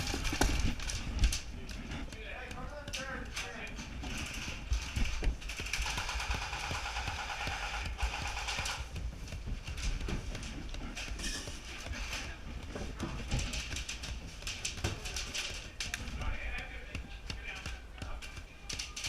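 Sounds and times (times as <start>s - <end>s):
airsoft gun full-auto burst: 5.8s - 8.8s.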